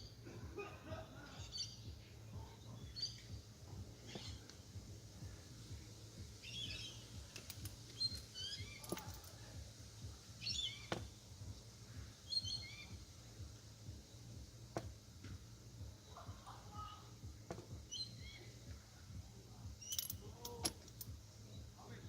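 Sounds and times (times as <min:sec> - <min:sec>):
bird chirping: 0:01.2 - 0:04.6, 0:05.2 - 0:09.2, 0:10.3 - 0:11.2, 0:12.0 - 0:14.4, 0:17.7 - 0:18.8.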